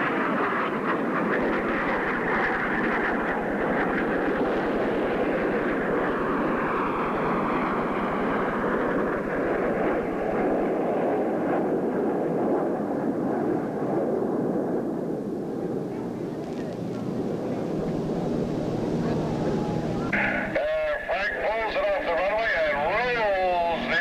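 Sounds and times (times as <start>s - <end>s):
jets flying past: 15.6s - 24.0s.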